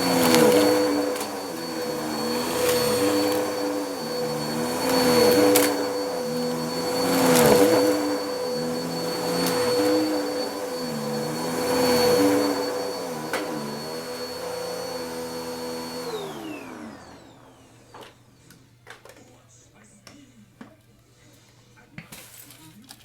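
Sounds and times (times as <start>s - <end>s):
vacuum cleaner running: 0.0s - 19.2s.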